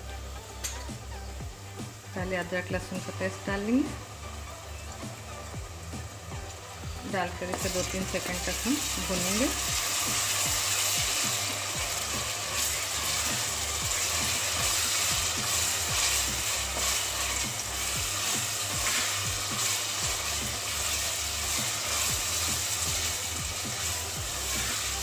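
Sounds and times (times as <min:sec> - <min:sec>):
onions sizzling in hot oil: 0:00.0 - 0:25.0
stirring in a pot: 0:07.4 - 0:25.0.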